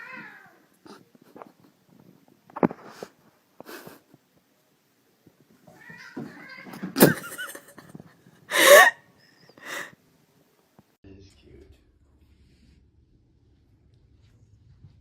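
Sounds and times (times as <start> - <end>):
cat meowing: 0.0 - 0.6, 5.7 - 6.8.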